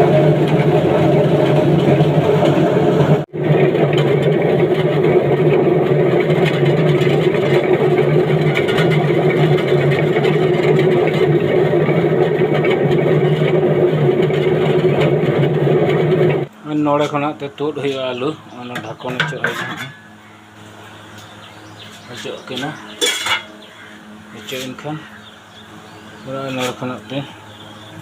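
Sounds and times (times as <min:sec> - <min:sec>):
potato peeling machine churning: 0:00.0 - 0:19.5.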